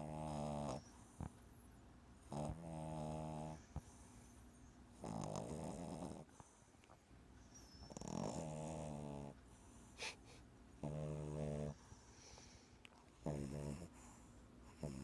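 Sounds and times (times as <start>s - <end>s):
puppy snoring: 0.0s - 1.4s, 2.2s - 3.9s, 4.9s - 6.5s, 7.7s - 9.4s, 10.8s - 12.5s, 13.2s - 15.0s.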